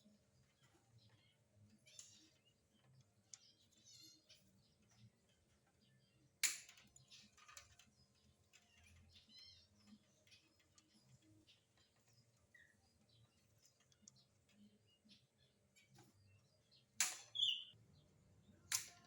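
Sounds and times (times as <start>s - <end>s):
faint bird chirps: 0.0s - 19.0s
faint clicks and taps of cage bars: 0.4s - 14.8s, 17.0s - 17.5s, 18.7s - 19.0s.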